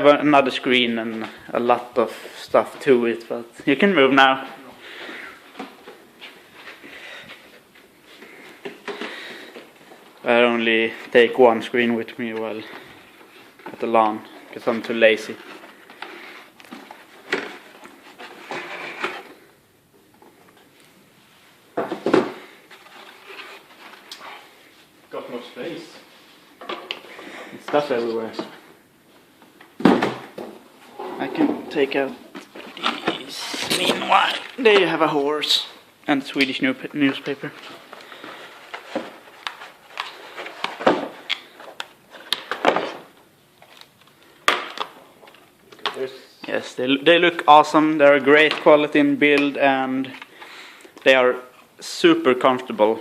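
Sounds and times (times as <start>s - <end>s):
rustling: 20.2s - 27.4s.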